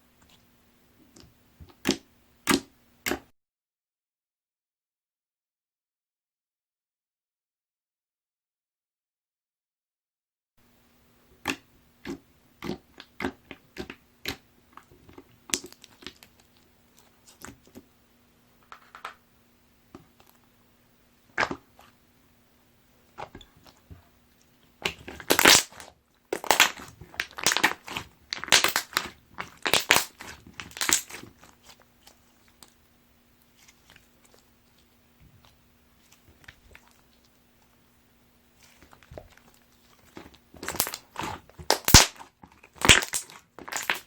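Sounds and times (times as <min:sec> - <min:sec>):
slime squishing: 0:11.4 - 0:17.9, 0:21.3 - 0:22.0, 0:23.0 - 0:44.0
slime clicking and popping: 0:15.1 - 0:16.3, 0:24.8 - 0:31.4, 0:38.6 - 0:44.0.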